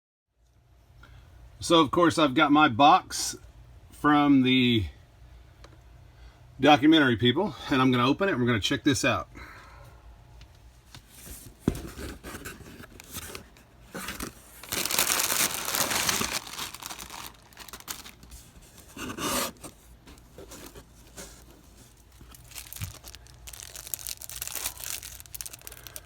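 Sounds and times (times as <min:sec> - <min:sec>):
packaging tearing and crinkling: 0:11.9 - 0:26.0
loud packaging rip: 0:13.9 - 0:21.5, 0:22.2 - 0:26.0.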